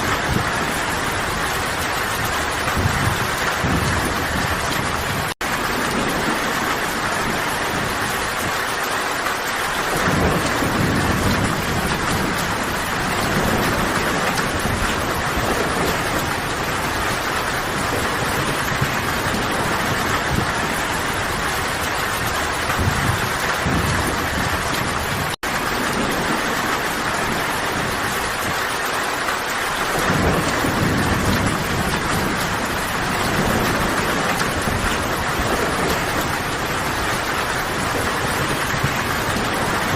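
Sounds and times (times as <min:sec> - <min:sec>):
heavy rain: 0:00.0 - 0:39.9
low thunder rolls: 0:00.0 - 0:39.9.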